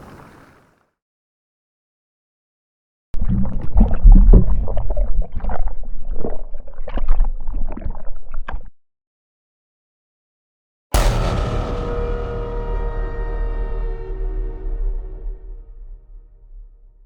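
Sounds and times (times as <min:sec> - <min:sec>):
water gurgling and sloshing: 0:03.2 - 0:08.8.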